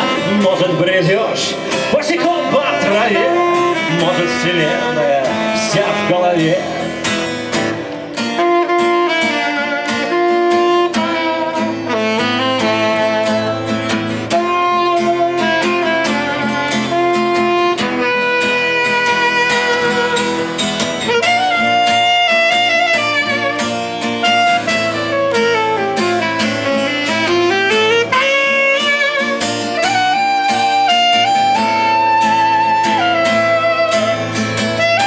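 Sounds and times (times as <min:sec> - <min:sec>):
singing lead melody: 0:00.0 - 0:35.0
strummed guitar rhythm: 0:00.0 - 0:35.0.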